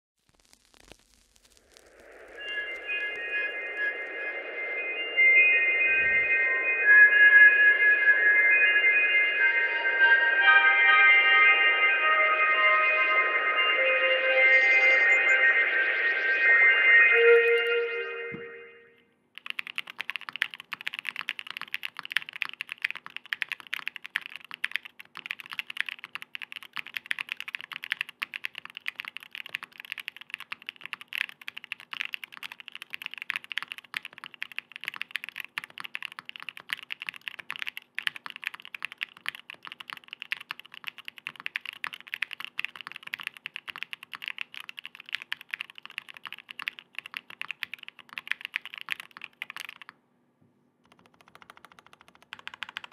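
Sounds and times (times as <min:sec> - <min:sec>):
fast mechanical keyboard typing: 0:19.4 - 0:49.9, 0:50.8 - 0:52.9.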